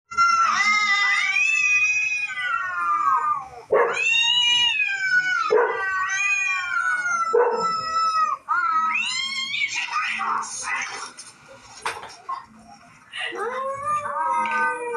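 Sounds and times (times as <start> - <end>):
cats yowling: 0.1 - 10.4, 13.3 - 14.9.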